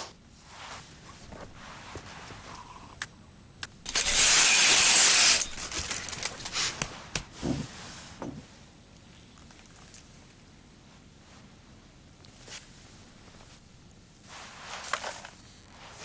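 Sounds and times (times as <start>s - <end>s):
clicks and rattles: 5.3s - 6.9s.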